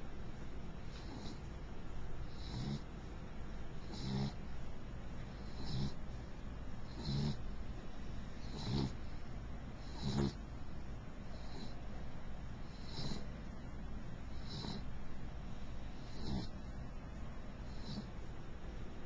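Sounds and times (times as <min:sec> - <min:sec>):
dog snoring: 0:00.9 - 0:01.5, 0:02.2 - 0:02.9, 0:03.8 - 0:04.5, 0:05.3 - 0:06.1, 0:06.8 - 0:07.6, 0:08.3 - 0:10.4, 0:11.3 - 0:11.8, 0:12.6 - 0:13.3, 0:14.2 - 0:15.0, 0:15.6 - 0:16.8, 0:17.6 - 0:18.2.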